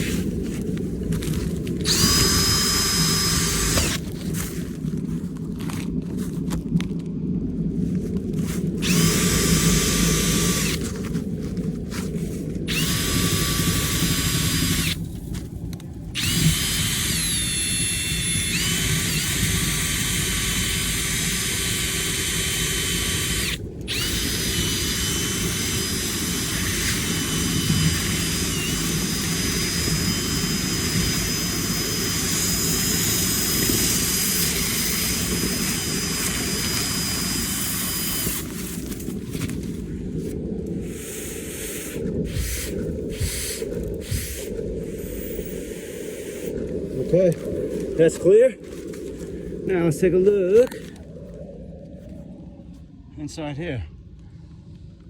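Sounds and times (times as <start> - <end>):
vacuum suction noise: 0.0 - 6.5, 7.8 - 15.4, 16.1 - 53.0
drill spinning cleaning whip: 1.9 - 4.0, 8.8 - 10.9, 12.7 - 15.0, 16.2 - 39.0, 40.9 - 46.5.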